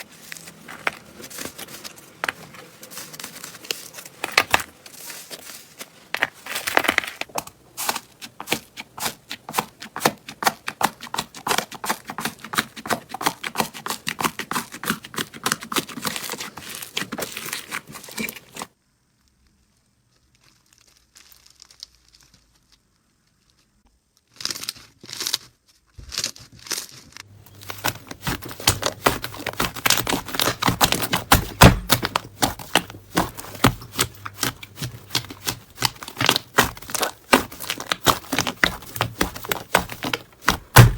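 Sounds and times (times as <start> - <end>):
slime squished by hand: 27.4 - 40.9.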